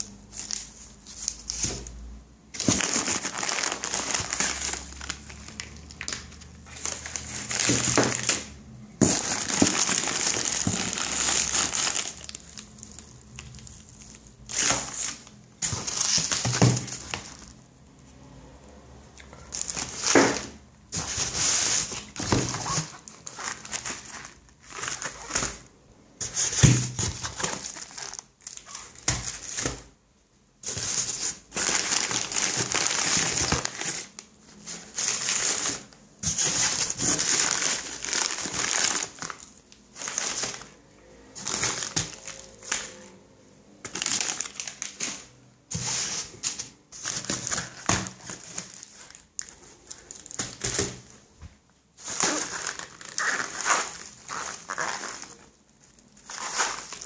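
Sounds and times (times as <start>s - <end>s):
wrapping crinkling and rustling: 0.0s - 17.7s, 19.3s - 30.0s, 30.6s - 51.3s, 51.9s - 57.0s.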